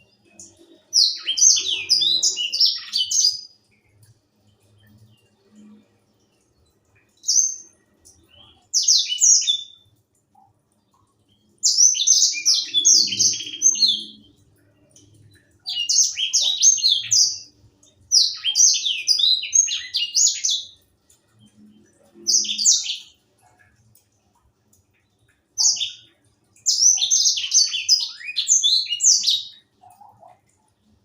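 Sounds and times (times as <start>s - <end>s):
finch chirping song: 0.0s - 5.3s, 7.1s - 9.8s, 11.3s - 20.8s, 21.4s - 23.2s, 25.6s - 30.4s.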